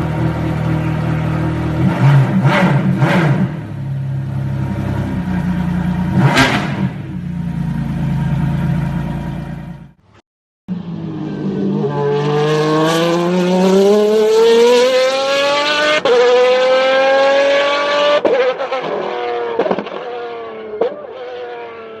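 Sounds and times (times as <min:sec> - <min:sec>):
race car engine accelerating: 0:00.0 - 0:09.8, 0:10.7 - 0:22.0.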